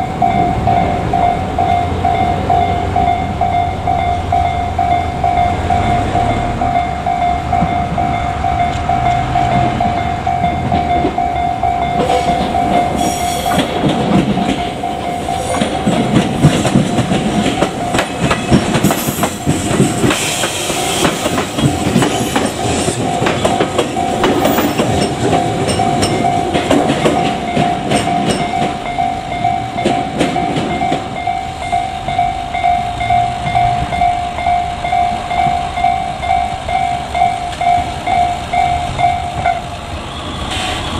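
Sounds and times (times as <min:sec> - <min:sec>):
level-crossing warning bell: 0:00.0 - 0:40.9
train wheels clattering: 0:07.4 - 0:34.2.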